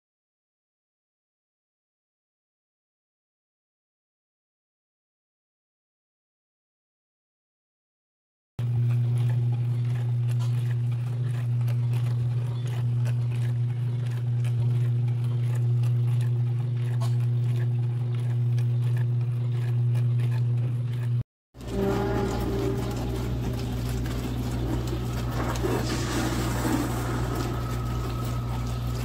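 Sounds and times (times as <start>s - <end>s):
dishwasher pump humming: 8.6s - 29.0s.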